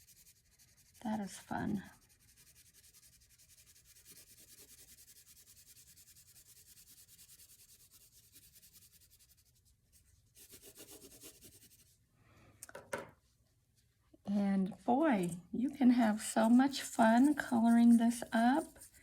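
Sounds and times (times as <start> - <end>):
colouring tool scrubbing paper: 0.0 - 9.7, 10.3 - 11.9, 15.8 - 19.0.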